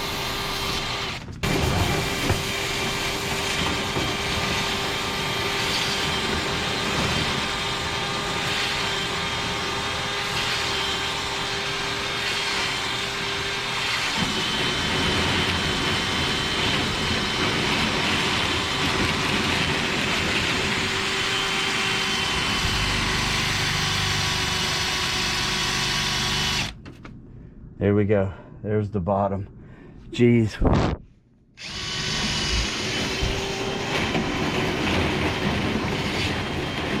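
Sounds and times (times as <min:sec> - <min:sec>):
vent cleaning motor whining: 0:31.6 - 0:37.0.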